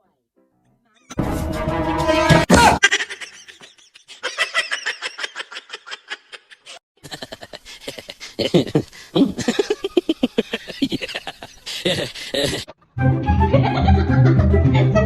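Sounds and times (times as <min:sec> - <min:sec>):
several voices laughing: 0:02.5 - 0:12.8, 0:13.4 - 0:15.0
person laughing in quick bursts: 0:02.6 - 0:12.8.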